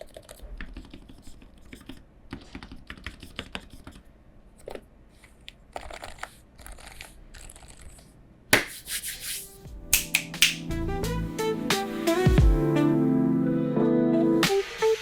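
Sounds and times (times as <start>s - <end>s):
keyboard typing: 0.0s - 4.0s.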